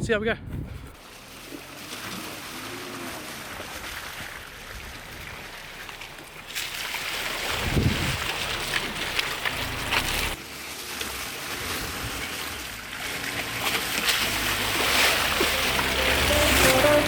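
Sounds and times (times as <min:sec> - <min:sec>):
water splashing around vehicle: 0:00.9 - 0:17.0
car engine running: 0:01.0 - 0:10.4, 0:14.1 - 0:17.0.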